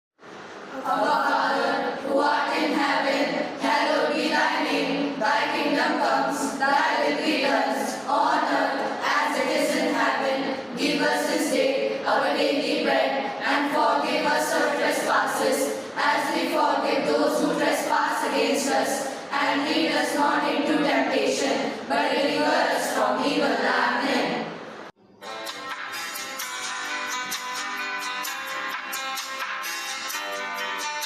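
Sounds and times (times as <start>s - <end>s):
voices singing together: 0.7s - 24.9s.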